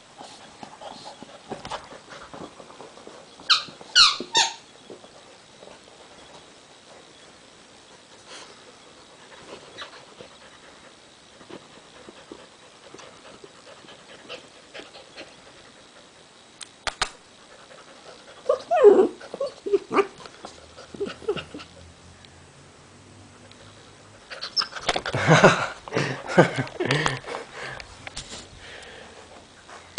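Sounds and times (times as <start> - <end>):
rubber toy squeaking: 3.5 - 4.6
sharp clicks: 16.6 - 17.2.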